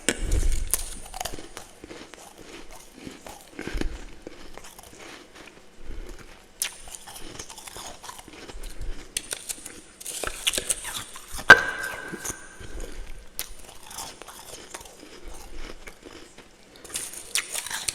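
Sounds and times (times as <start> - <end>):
chewing crunchy frost: 0.0 - 11.4, 12.6 - 17.9.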